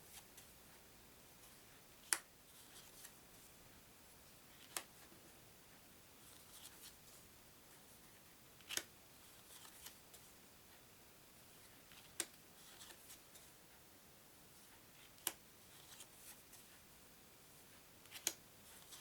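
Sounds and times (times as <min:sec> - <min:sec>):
cards rustling: 0:06.2 - 0:07.0, 0:08.6 - 0:10.2, 0:11.9 - 0:13.5, 0:15.0 - 0:16.7.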